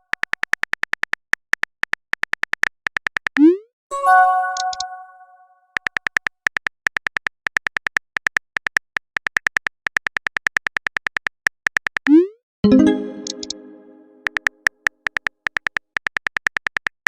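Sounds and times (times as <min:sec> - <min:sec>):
phone keyboard clicks: 0:04.6 - 0:04.9.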